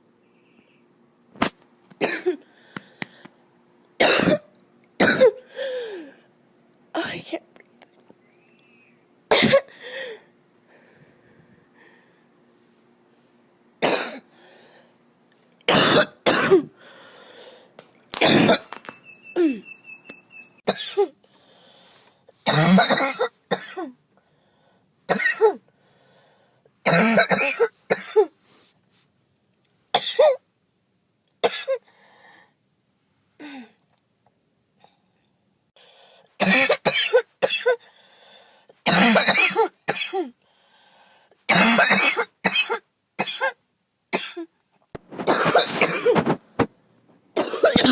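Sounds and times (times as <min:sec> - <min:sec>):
person coughing harshly: 0:02.0 - 0:02.5, 0:04.0 - 0:05.5, 0:09.3 - 0:10.2, 0:13.8 - 0:14.3, 0:15.7 - 0:16.8, 0:18.2 - 0:18.7, 0:20.7 - 0:21.2, 0:22.5 - 0:24.0, 0:25.1 - 0:25.6, 0:26.8 - 0:28.3, 0:30.0 - 0:30.4, 0:31.4 - 0:31.8, 0:36.4 - 0:37.8, 0:38.9 - 0:40.4, 0:41.5 - 0:44.5, 0:45.2 - 0:46.4, 0:47.4 - 0:47.9.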